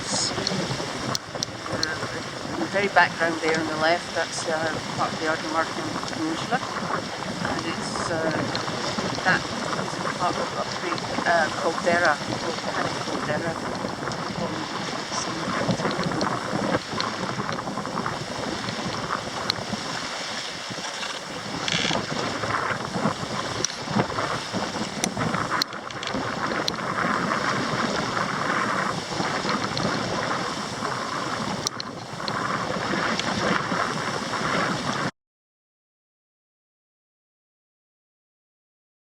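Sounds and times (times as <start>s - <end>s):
scattered clicks: 0.0s - 17.7s, 23.6s - 24.3s, 31.6s - 33.6s
water rushing along hull: 0.0s - 35.1s
wind buffeting microphone: 0.0s - 35.1s.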